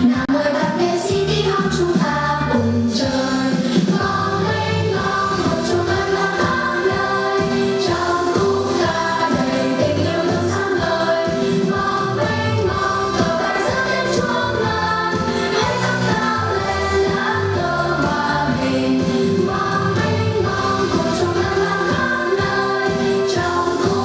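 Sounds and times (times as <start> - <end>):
choir singing: 0.0 - 24.0.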